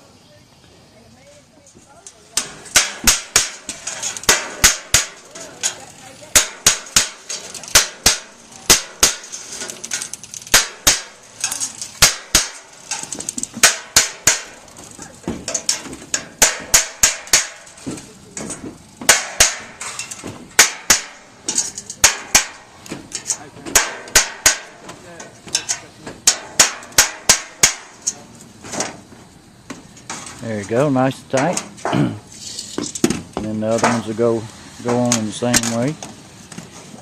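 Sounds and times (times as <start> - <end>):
hammer striking metal: 15.6 - 17.7, 19.0 - 20.0, 20.6 - 21.3, 22.0 - 22.6, 25.6 - 28.0.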